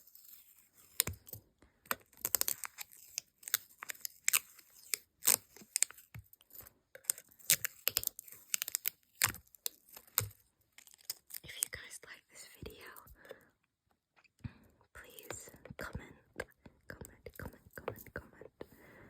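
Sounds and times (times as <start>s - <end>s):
stickers peeling and crinkling: 0.0s - 11.8s.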